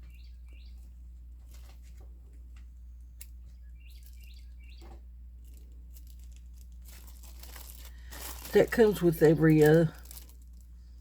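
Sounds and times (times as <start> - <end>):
faint bird chirps: 0.0 - 0.9, 3.5 - 5.0
low electrical hum: 0.0 - 11.0.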